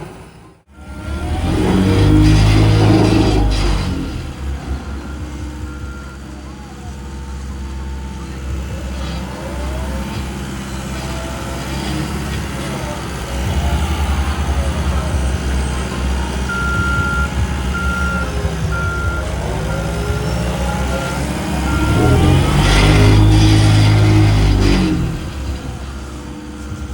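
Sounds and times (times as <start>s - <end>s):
diesel machinery engine rumble: 0.0s - 26.9s
reversing alarm beeping: 0.7s - 26.9s.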